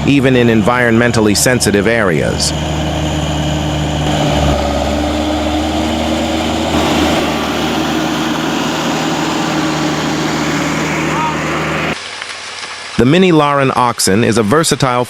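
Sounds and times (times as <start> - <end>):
machine engine running: 0.0 - 12.0.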